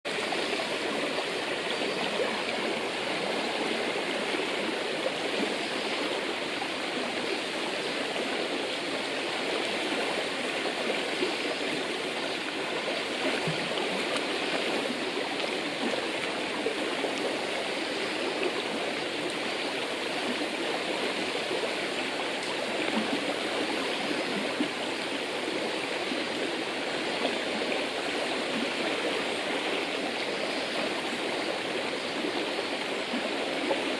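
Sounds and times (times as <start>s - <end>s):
river water bubbling over stones: 0.1s - 33.9s
small water splashes: 0.1s - 33.9s.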